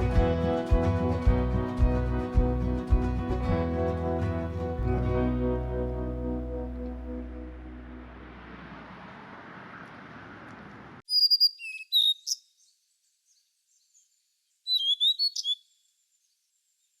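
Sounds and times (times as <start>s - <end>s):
songbird singing: 11.0s - 17.0s.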